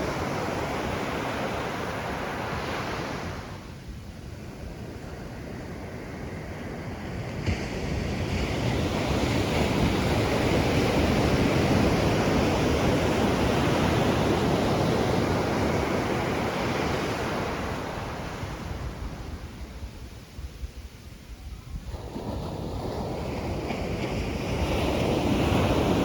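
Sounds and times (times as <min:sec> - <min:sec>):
ocean surf breaking on shore: 0:00.0 - 0:26.0.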